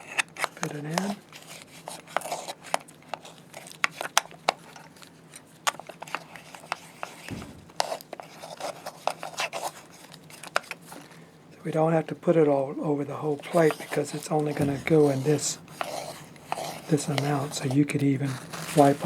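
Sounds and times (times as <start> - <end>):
rubbing: 5.8 - 11.0, 13.3 - 19.0.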